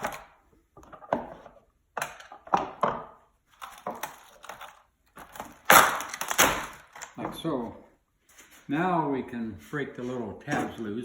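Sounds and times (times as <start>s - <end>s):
knocking and scraping of mold pieces: 0.0s - 7.5s.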